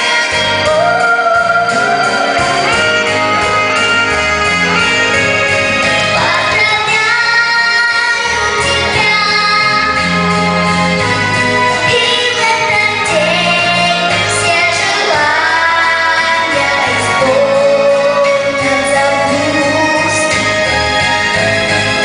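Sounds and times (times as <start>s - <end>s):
woman singing: 0.0s - 3.2s, 6.1s - 10.2s, 11.8s - 20.5s
instrumental backing: 0.0s - 22.0s.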